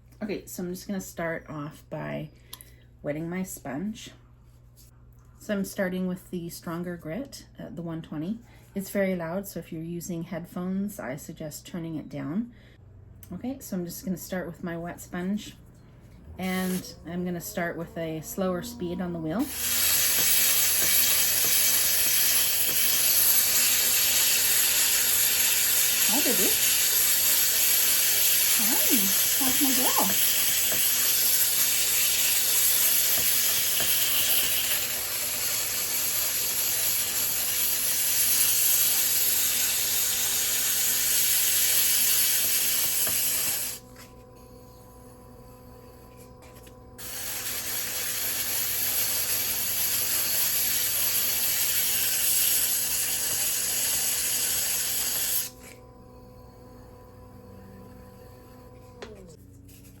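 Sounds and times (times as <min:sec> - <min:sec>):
wheel motor hum: 0:15.8 - 0:59.9
sanding pad grinding ceramic: 0:16.4 - 0:44.5, 0:46.2 - 0:55.8.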